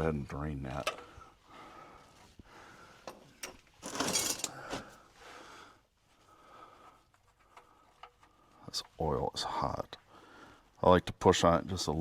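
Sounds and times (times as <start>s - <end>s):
metal clinks: 3.8s - 4.6s.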